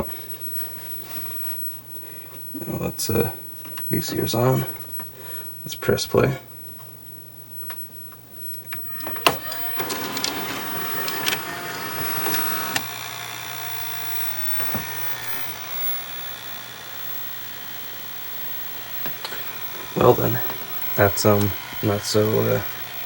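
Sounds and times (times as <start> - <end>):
tape drum steady whir: 8.1 - 23.0
motors whirring and clicking: 8.8 - 23.0.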